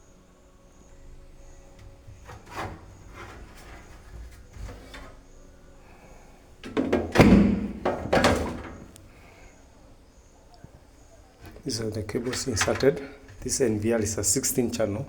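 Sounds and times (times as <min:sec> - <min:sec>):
metal scraping and knocking: 0:01.8 - 0:05.4, 0:06.6 - 0:09.0, 0:11.4 - 0:13.7.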